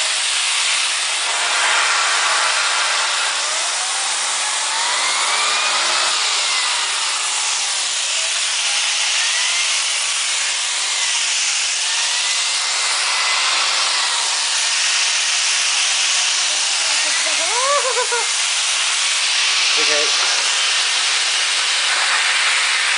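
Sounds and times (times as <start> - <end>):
vacuum cleaner running: 0.0 - 22.9.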